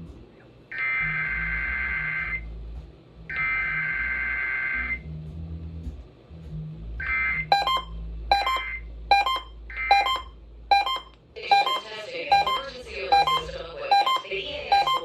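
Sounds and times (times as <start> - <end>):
short sharp beeps: 7.5 - 15.0.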